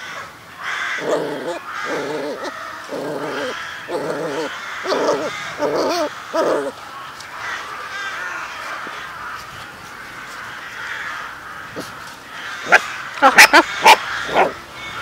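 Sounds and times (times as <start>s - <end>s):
puppies whining and yelping: 1.0s - 6.8s, 12.7s - 14.6s.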